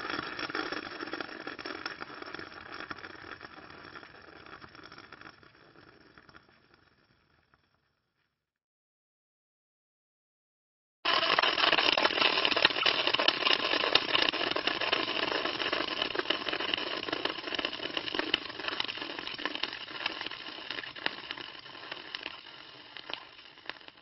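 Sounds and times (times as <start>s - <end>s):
car wheel spinning: 11.1s - 24.0s.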